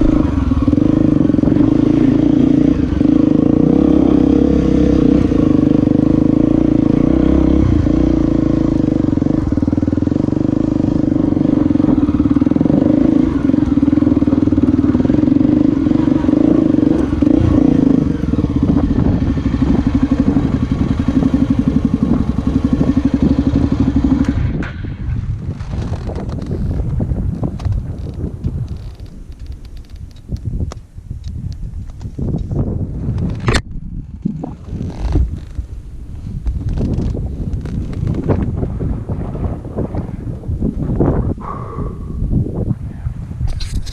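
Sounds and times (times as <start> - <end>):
motorcycle engine running: 0.0 - 30.7, 31.4 - 43.9
clatter: 7.8 - 41.1, 43.4 - 43.9.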